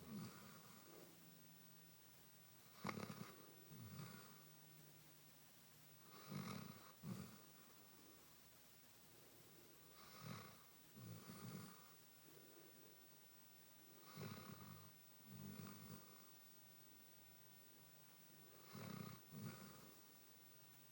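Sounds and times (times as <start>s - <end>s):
dog snoring softly: 0.0s - 1.1s, 2.6s - 4.6s, 6.0s - 7.6s, 9.8s - 12.0s, 13.9s - 16.4s, 18.5s - 20.1s.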